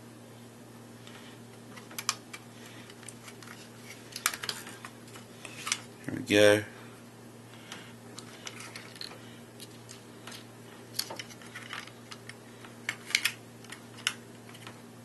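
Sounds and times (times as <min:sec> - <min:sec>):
plastic parts clicking and snapping: 0:01.8 - 0:05.9, 0:08.2 - 0:14.8.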